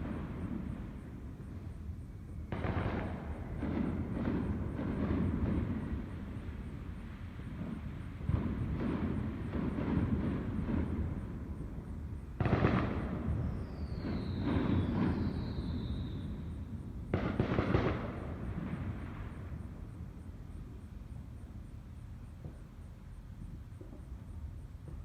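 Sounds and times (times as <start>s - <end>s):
fireworks booms and crackles: 0.0s - 1.8s, 2.5s - 20.9s
descending firework whistle: 7.7s - 19.7s.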